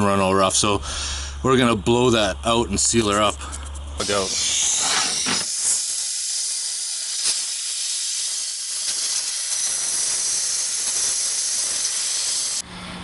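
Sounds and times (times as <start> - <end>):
compressed air hissing: 0.8 - 1.4, 3.4 - 12.6.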